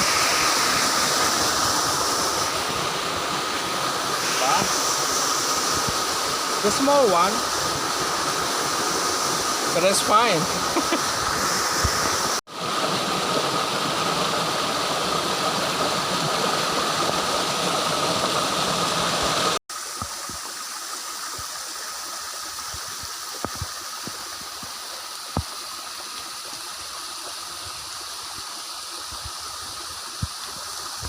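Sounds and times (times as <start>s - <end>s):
waterfall rushing: 0.0s - 21.1s.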